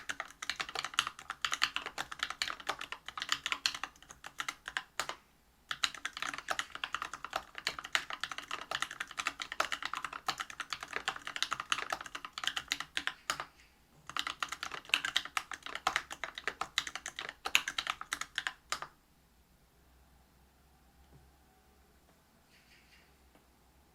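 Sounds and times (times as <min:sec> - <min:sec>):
mechanical keyboard typing: 0:00.0 - 0:13.5, 0:14.1 - 0:18.9.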